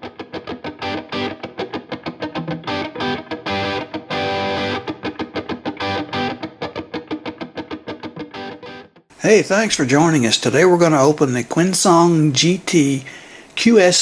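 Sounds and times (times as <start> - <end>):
fast electric guitar music: 0.0 - 9.0.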